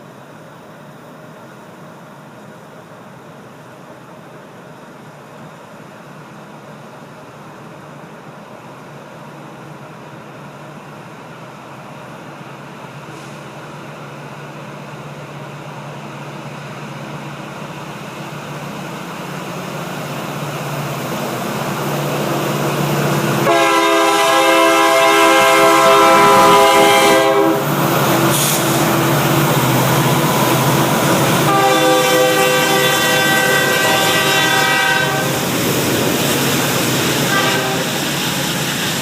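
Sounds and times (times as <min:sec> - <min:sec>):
freight train running noise: 0:00.0 - 0:39.0
locomotive air horn blast: 0:23.4 - 0:27.7, 0:31.4 - 0:35.5, 0:37.2 - 0:38.1.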